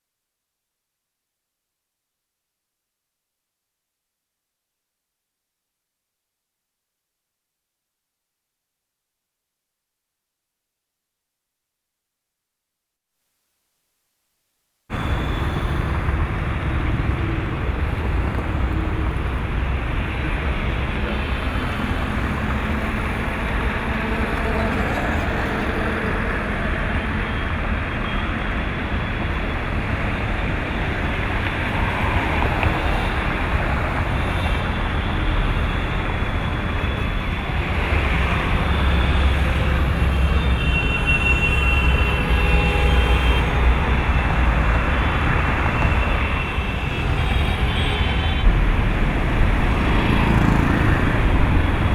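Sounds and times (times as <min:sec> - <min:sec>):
road traffic rumble: 0:14.9 - 0:51.9.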